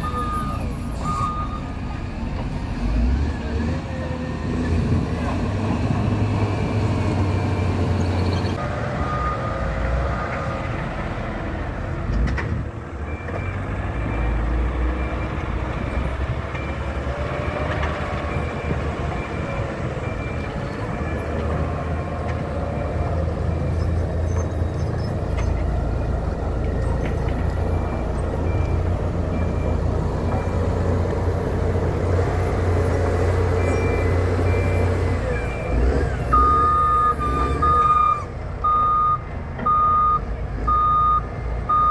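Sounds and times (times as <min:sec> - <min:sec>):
reversing alarm beeping: 0:00.0 - 0:01.8, 0:33.6 - 0:41.9.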